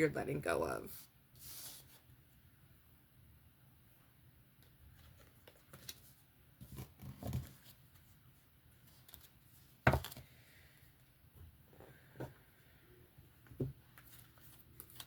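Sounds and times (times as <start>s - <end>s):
cards being shuffled: 13.9s - 15.0s.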